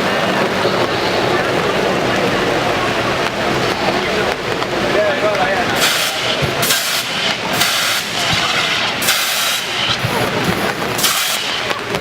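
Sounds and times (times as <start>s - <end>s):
steam jets hissing in bursts: 5.0s - 12.0s.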